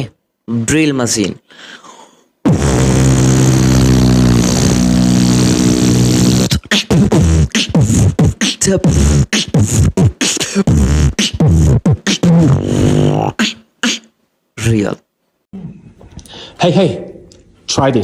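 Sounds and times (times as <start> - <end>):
beatboxer imitating electric drill: 2.4 - 14.2.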